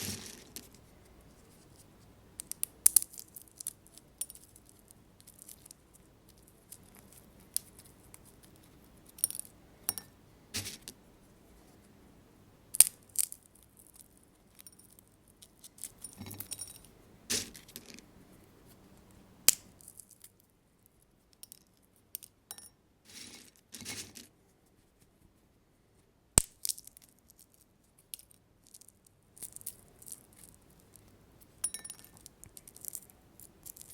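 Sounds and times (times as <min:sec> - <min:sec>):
seeds cracking in a glass bowl: 0:12.7 - 0:16.8, 0:26.4 - 0:33.9.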